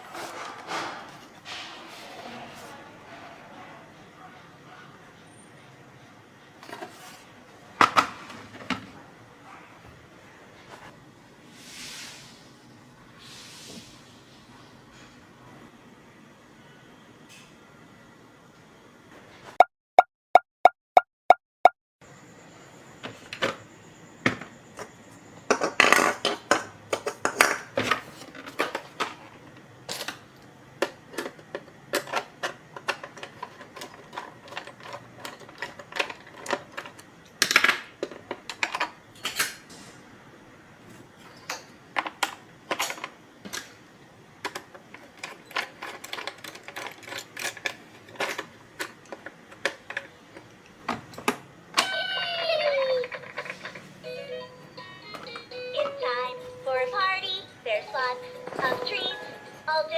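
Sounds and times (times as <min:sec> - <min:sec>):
plastic pieces clicking and clattering: 0:30.8 - 0:39.5, 0:44.4 - 0:50.5.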